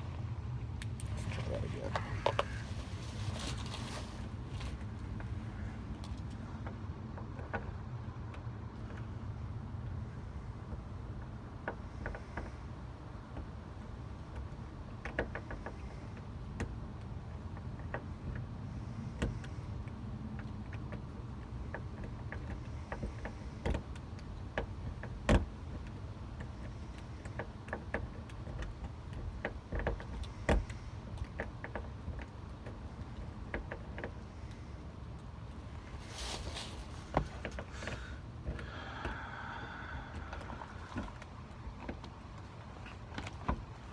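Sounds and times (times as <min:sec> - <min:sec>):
steady low rumble: 0:00.0 - 0:12.0, 0:32.0 - 0:43.9.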